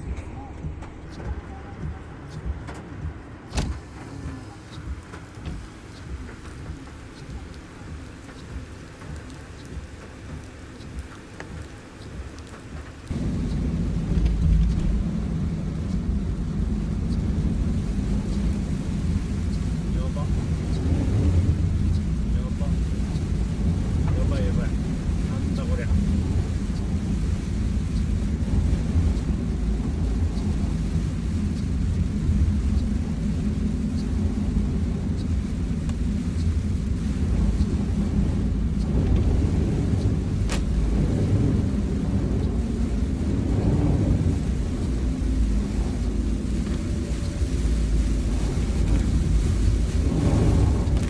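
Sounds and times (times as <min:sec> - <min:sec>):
heavy rain: 0:00.0 - 0:51.0
raindrops ticking: 0:00.0 - 0:51.0
loud low rumble: 0:13.1 - 0:51.0.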